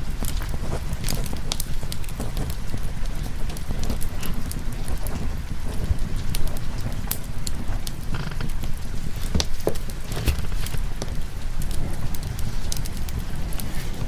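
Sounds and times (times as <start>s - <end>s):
rain: 0.0s - 14.0s
wood fire crackling and popping: 0.0s - 14.0s
low rumble: 9.8s - 14.0s.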